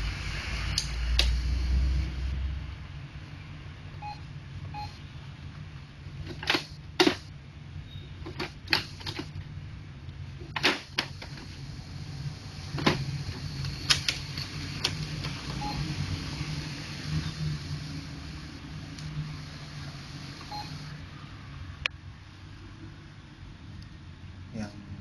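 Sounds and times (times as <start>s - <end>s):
printer low hum: 6.1s - 7.3s, 8.2s - 9.6s, 10.3s - 21.5s.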